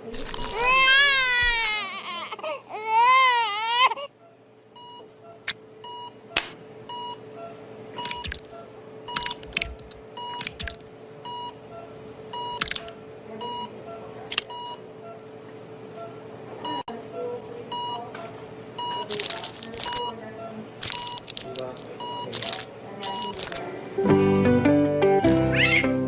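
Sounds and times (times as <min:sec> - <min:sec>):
sharp clicks: 0:09.2 - 0:10.8, 0:12.6 - 0:12.9.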